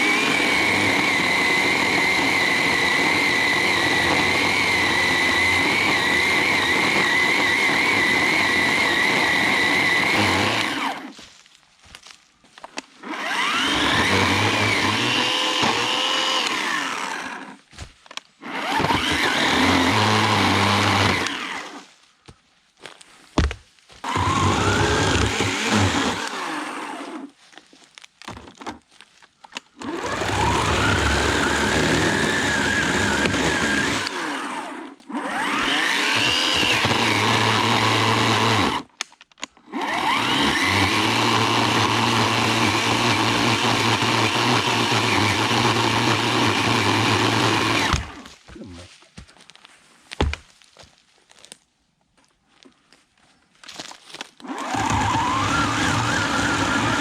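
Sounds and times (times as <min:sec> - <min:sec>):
electric chainsaw cutting wood: 0:00.0 - 0:11.2, 0:13.0 - 0:21.9, 0:23.4 - 0:27.3, 0:29.6 - 0:38.9, 0:39.5 - 0:48.5, 0:54.1 - 0:57.0.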